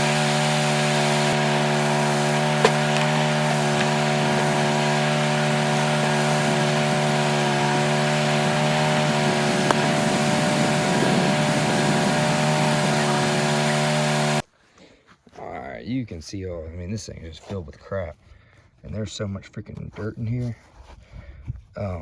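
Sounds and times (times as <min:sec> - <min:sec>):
sawmill blade cutting log: 0:00.0 - 0:14.4.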